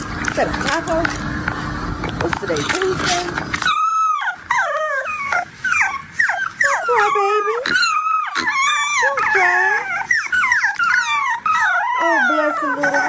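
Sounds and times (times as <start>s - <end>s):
puppy whining and howling: 3.4s - 13.0s.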